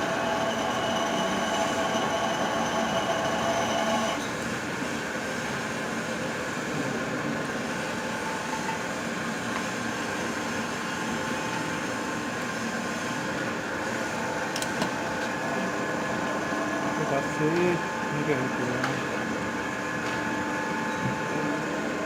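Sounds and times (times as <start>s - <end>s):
machine humming: 0.0s - 4.2s.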